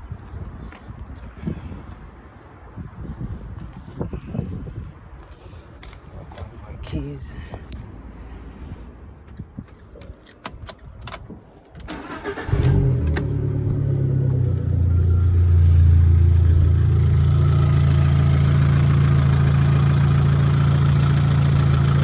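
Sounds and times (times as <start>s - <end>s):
car engine starting and idling: 11.8s - 22.0s.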